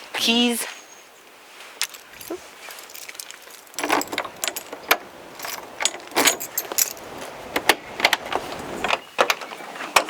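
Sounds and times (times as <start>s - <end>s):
keys jangling: 1.8s - 9.0s.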